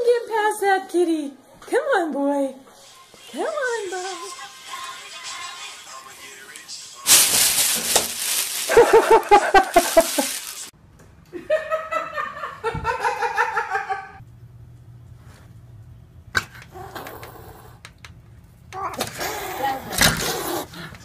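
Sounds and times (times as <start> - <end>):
person laughing: 8.6 - 10.5.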